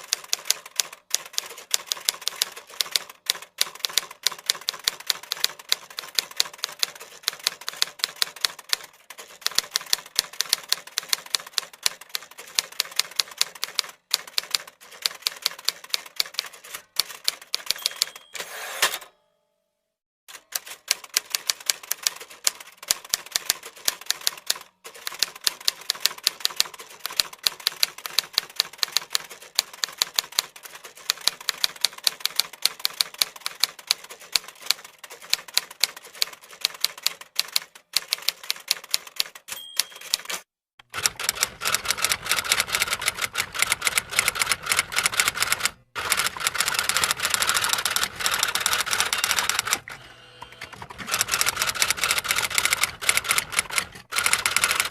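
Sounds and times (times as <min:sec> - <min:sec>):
typewriter keys clacking: 0:00.0 - 0:18.5, 0:20.3 - 0:49.8, 0:50.7 - 0:54.9
typewriter bell ding: 0:17.6 - 0:19.4, 0:39.5 - 0:40.5.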